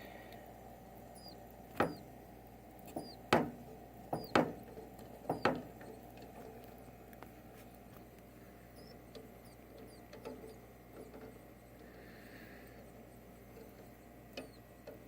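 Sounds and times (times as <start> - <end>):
squeaky peeps from raw egg: 1.1 - 2.1, 2.8 - 3.5, 4.1 - 6.1, 8.7 - 11.8, 12.6 - 14.8.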